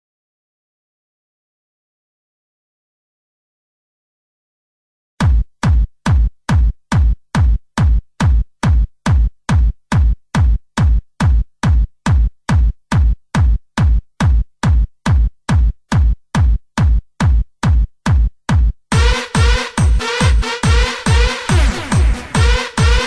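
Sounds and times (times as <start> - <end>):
drum machine kick drum: 5.2 - 23.0.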